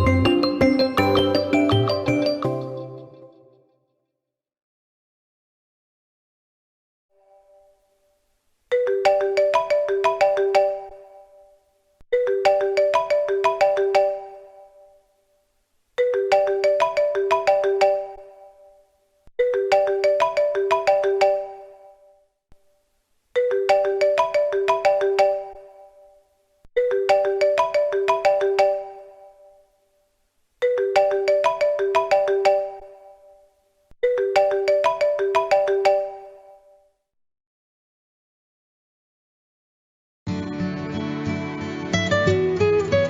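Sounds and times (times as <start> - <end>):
mobile phone ringtone: 0.0 - 2.9, 8.7 - 15.0, 16.0 - 22.2, 23.4 - 26.2, 26.8 - 29.7, 30.6 - 36.9.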